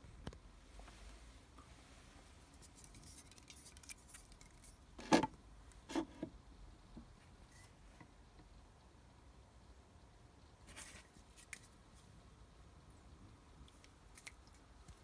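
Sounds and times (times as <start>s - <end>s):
faint clicks and rustles: 0.1s - 4.9s.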